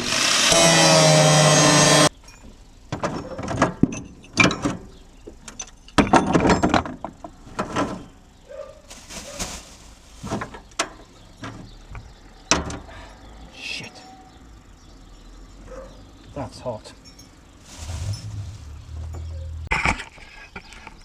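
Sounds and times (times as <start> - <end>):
metallic clinks of hand tools: 17.0 - 17.4.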